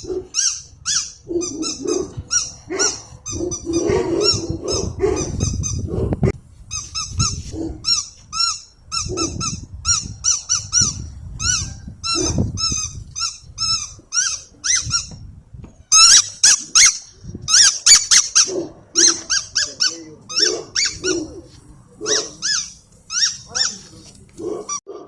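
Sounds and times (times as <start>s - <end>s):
squeaky dog toy chirps: 0.4s - 4.5s, 5.2s - 5.8s, 6.7s - 15.1s, 15.9s - 21.3s, 22.1s - 23.9s.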